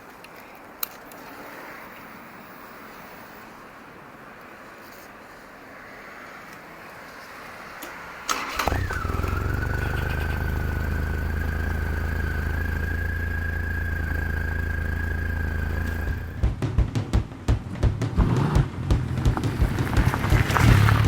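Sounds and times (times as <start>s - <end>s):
starter click and whine: 8.3s - 16.5s
motorcycle engine idling: 8.4s - 21.0s.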